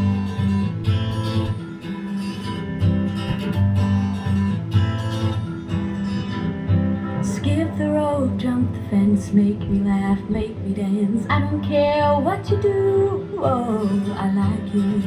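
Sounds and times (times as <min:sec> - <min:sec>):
pop song through a speaker: 0:07.2 - 0:15.0.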